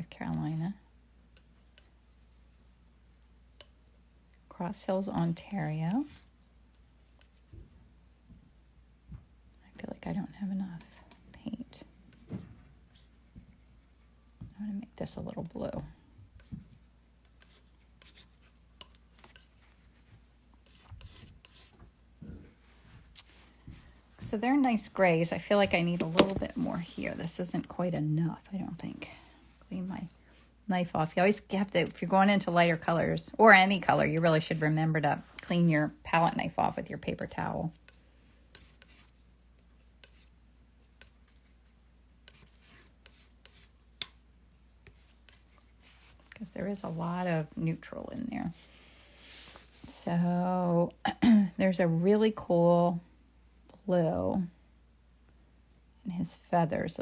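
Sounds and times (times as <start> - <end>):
palette knife scraping paint: 16.8 - 21.8, 37.7 - 39.2, 39.8 - 44.0.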